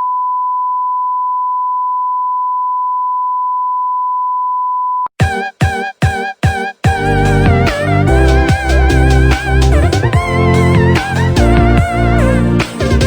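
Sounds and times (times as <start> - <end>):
loud music stabs: 5.2 - 13.0.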